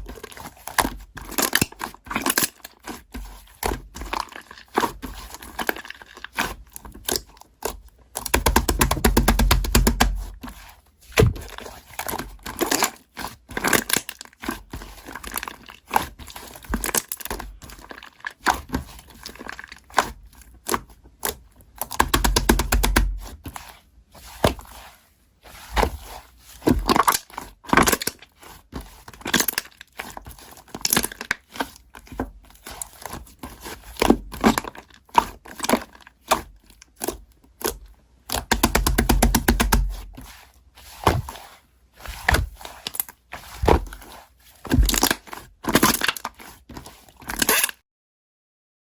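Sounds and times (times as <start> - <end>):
slime squelching: 0.0 - 47.7
dull thumps: 11.1 - 11.6.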